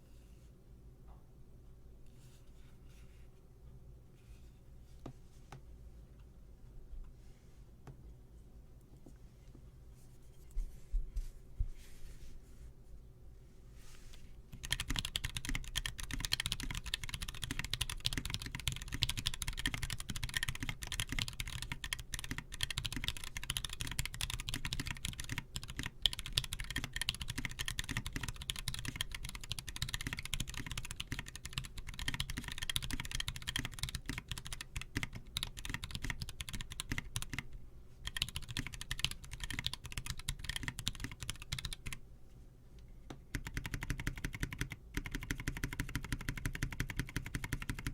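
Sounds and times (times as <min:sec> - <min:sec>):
mechanical keyboard typing: 0:14.5 - 0:42.0, 0:43.3 - 0:47.9.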